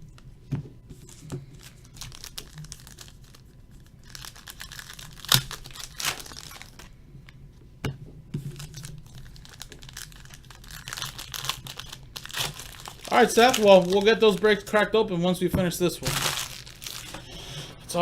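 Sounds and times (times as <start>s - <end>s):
foil wrappers tearing and crinkling: 1.0s - 6.9s, 8.4s - 14.9s, 16.0s - 17.4s.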